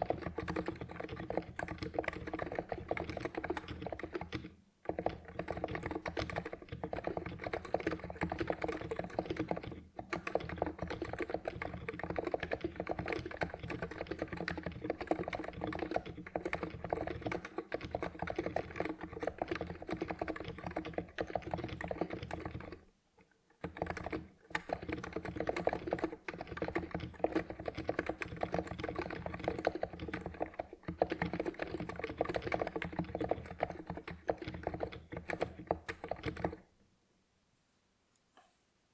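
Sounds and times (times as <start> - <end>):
keyboard typing: 0.0 - 36.7.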